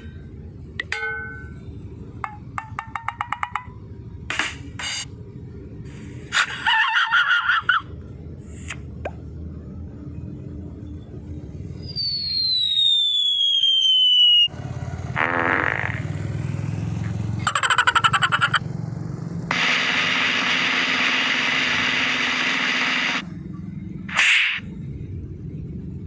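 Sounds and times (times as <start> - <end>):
descending cartoon whistle: 11.8 - 14.5
steady noisy sound effect: 19.5 - 23.3.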